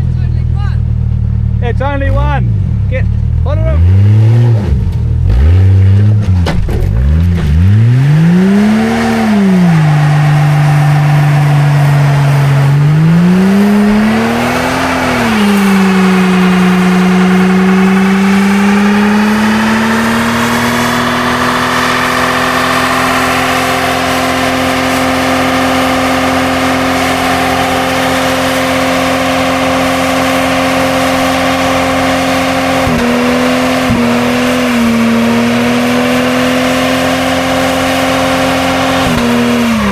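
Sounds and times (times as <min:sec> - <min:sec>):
car engine revving: 0:00.0 - 0:39.9.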